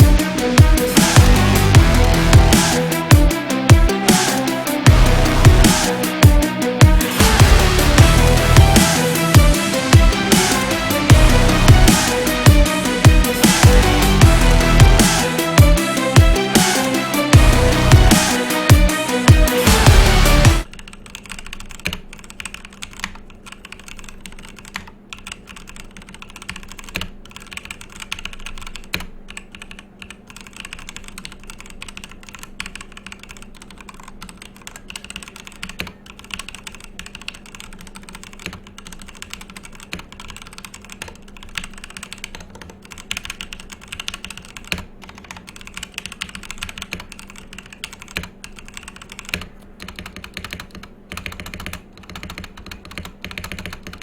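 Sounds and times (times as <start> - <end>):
steady low hum: 0.0 - 20.6
fast typing on mechanical keyboard: 20.6 - 54.0.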